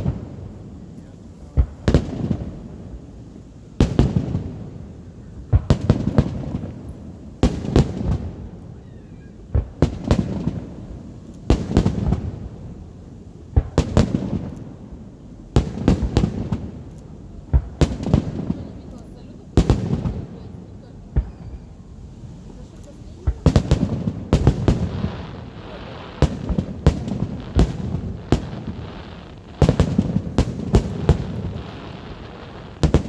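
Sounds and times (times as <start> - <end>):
firework bangs: 0.0 - 8.6, 9.2 - 33.0
low rumbling echo: 23.8 - 33.0.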